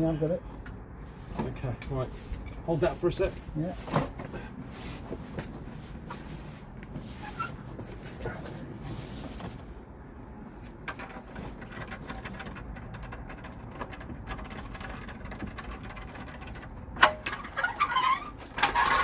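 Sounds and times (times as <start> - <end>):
hand tools clicking and rattling: 10.9 - 19.0.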